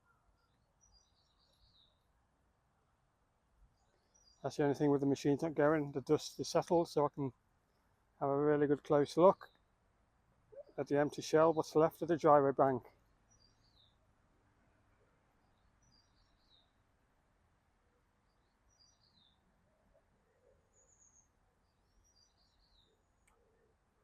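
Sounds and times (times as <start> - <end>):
faint birdsong chirps: 0.0 - 24.0
faint click: 23.2 - 23.4.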